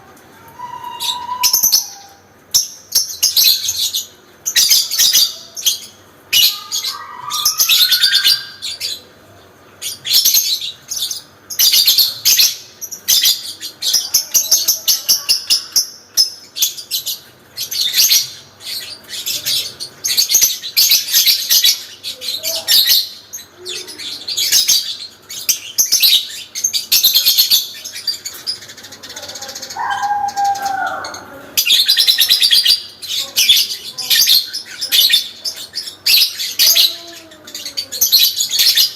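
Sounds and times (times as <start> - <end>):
lovebird high-pitched chatter: 0.4 - 9.0, 9.8 - 38.9.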